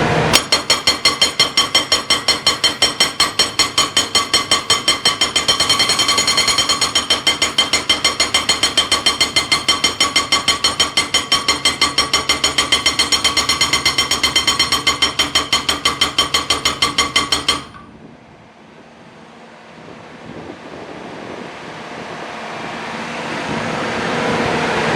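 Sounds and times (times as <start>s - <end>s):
hydraulic breaker hammering: 0.3s - 17.9s
faint wind-like rush: 17.9s - 24.9s.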